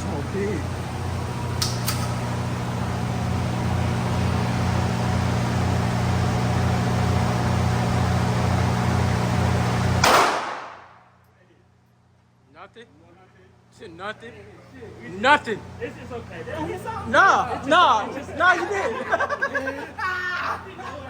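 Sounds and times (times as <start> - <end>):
ventilation fan hum and hiss: 0.0 - 21.0
loud sharp bang: 10.0 - 11.1.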